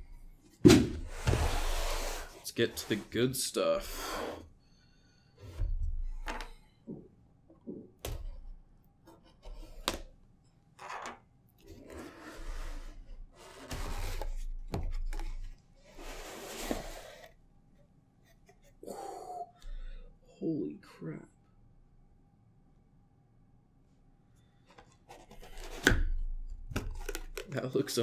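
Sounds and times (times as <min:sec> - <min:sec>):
cardboard rustling and scraping: 0:00.5 - 0:04.4, 0:10.8 - 0:17.4, 0:24.8 - 0:26.2
cardboard knocks and clicks: 0:05.5 - 0:07.0, 0:09.1 - 0:10.2, 0:13.7 - 0:15.6, 0:25.1 - 0:27.5.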